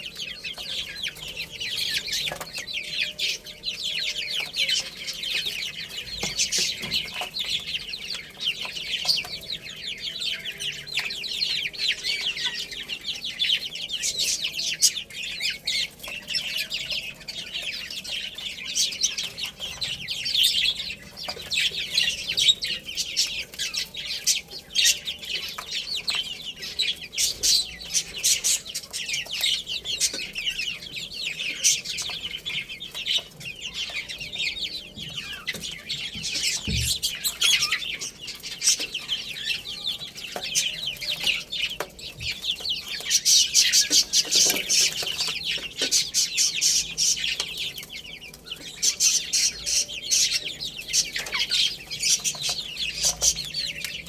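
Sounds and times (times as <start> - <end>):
baby chicks peeping: 0.0 - 54.0.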